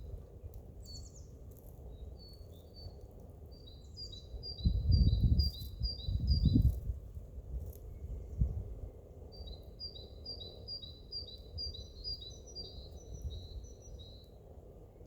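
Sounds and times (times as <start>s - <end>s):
higher bird song: 0.8s - 6.8s, 9.4s - 14.4s
songbird singing two-note phrases: 3.6s - 6.7s.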